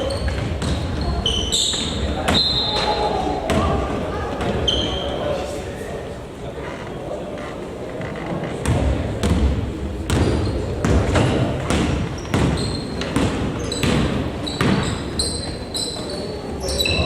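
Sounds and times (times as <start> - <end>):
sneakers squeaking: 0.0 - 5.4, 7.5 - 17.0
basketball bouncing on floor: 0.2 - 1.1, 8.6 - 15.0.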